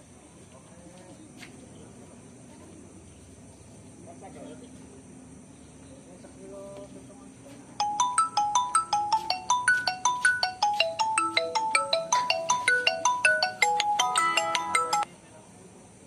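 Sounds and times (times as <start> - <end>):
mobile phone ringtone: 7.8 - 15.1.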